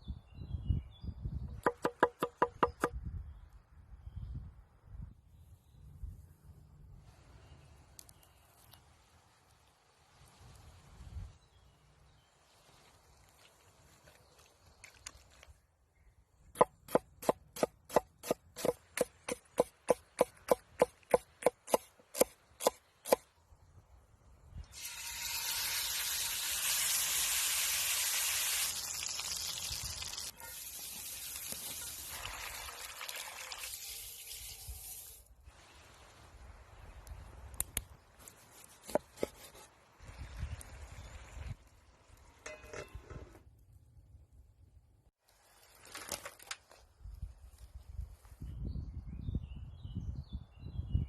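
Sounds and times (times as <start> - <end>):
liquid hissing: 24.8 - 35.3.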